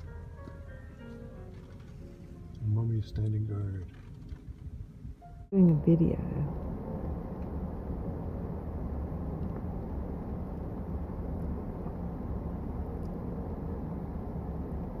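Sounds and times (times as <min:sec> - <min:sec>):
vehicle engine running: 0:05.6 - 0:15.0.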